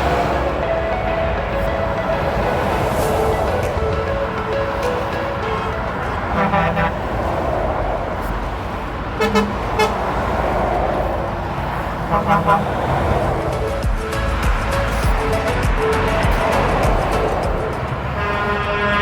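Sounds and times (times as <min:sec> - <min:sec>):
motorway traffic: 0:00.0 - 0:19.0
truck horn blasts: 0:02.0 - 0:07.2, 0:09.2 - 0:10.2, 0:12.1 - 0:12.9, 0:18.1 - 0:19.0.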